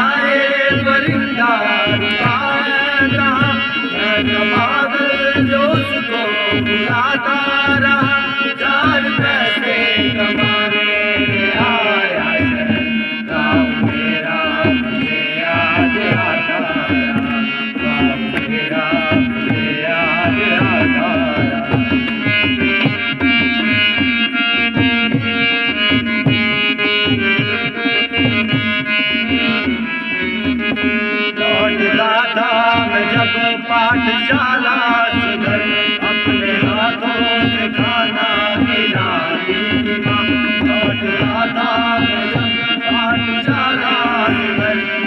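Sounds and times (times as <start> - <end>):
instrumental melody: 0.0 - 45.0
hand-drum strokes: 11.2 - 28.7.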